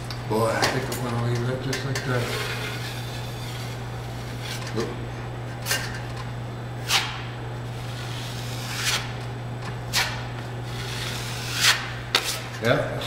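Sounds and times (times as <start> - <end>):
steady low hum: 0.0 - 13.0
drywall knife scraping: 2.1 - 4.7, 6.8 - 9.2, 9.9 - 12.6.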